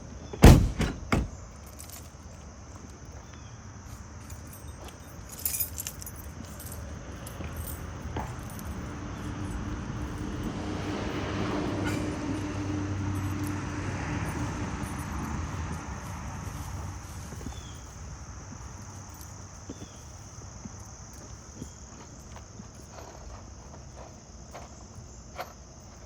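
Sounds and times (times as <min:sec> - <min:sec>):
small metallic clinks: 0:01.3 - 0:02.4, 0:03.9 - 0:10.5, 0:11.8 - 0:17.9
motor vehicle passing: 0:06.6 - 0:19.2.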